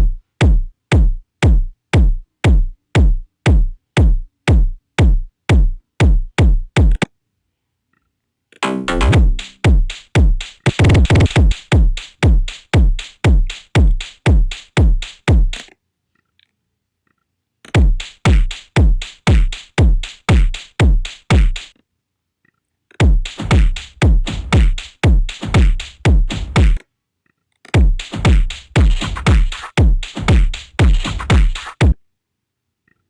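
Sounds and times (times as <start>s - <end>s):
distorted drum machine kicks: 0.0s - 7.1s, 8.6s - 15.6s, 17.8s - 21.7s, 23.0s - 26.8s, 27.8s - 32.0s
pitched sample: 8.6s - 9.9s.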